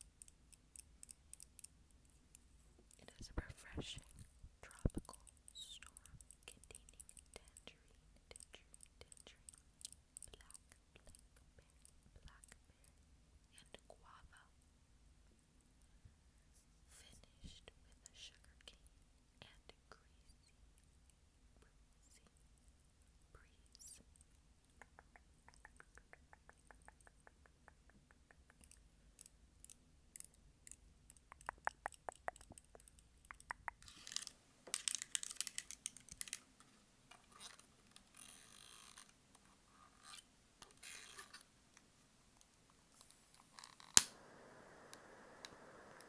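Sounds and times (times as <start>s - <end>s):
scratching and rustling: 33.8s - 41.5s
steady hiss: 41.2s - 46.0s
sharp click: 43.8s - 46.0s.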